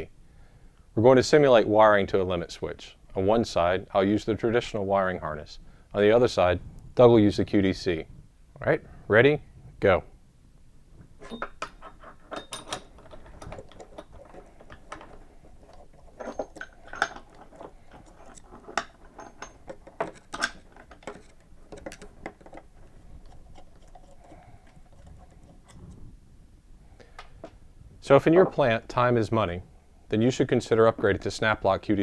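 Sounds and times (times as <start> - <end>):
plastic and metal parts clattering: 11.2 - 25.9.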